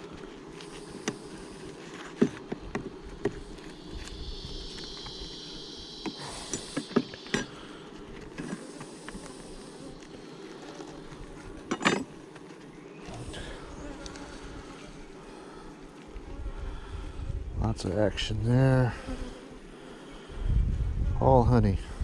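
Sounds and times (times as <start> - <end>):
honeybees buzzing: 0.0 - 20.6
wooden hive frames knocking: 2.1 - 4.0.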